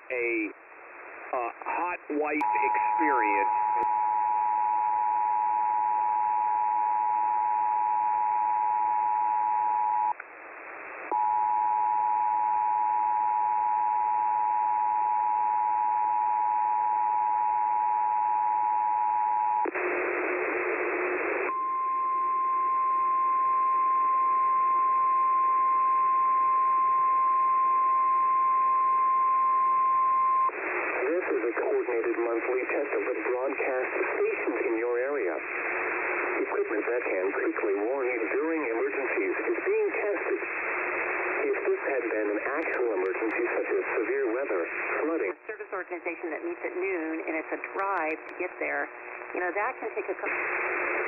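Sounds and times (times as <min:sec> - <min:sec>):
radio static hiss: 0:00.0 - 0:03.9, 0:19.6 - 0:21.5, 0:30.5 - 0:51.0.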